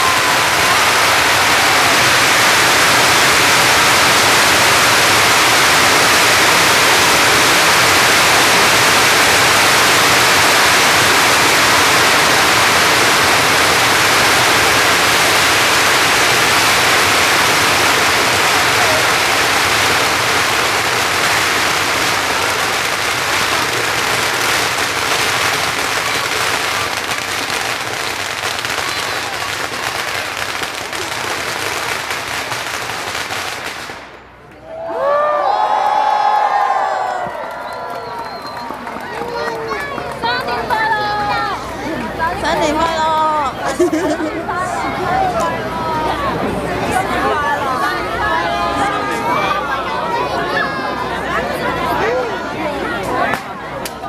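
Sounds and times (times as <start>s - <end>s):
firecrackers crackling: 0.0s - 35.4s, 36.0s - 49.4s, 53.0s - 54.0s.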